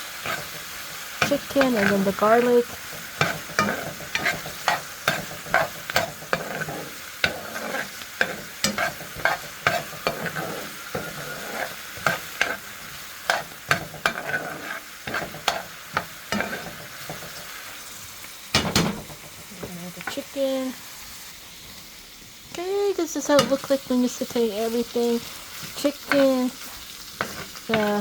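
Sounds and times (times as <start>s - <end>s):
utensil scraping a pan: 0.0s - 17.6s, 23.3s - 28.0s
food sizzling in a pan: 0.0s - 28.0s.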